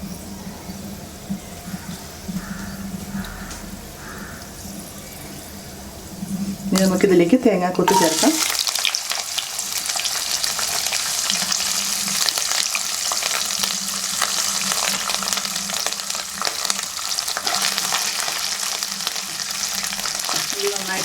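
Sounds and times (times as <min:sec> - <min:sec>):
food frying in hot oil: 0:04.6 - 0:21.0
spoon stirring in pan: 0:07.9 - 0:08.7.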